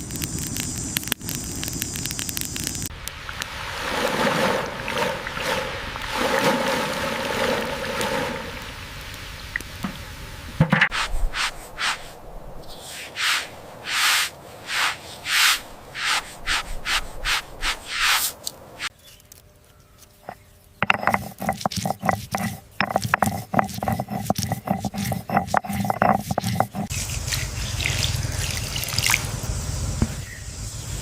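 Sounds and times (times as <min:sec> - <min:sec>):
rhythmic scraping strokes: 0:20.8 - 0:27.6.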